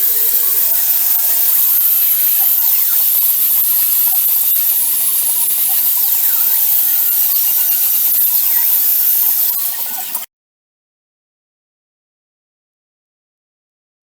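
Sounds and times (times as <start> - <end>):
faint wavering squeals: 0.0 - 10.3
power tool hissing: 0.0 - 10.3.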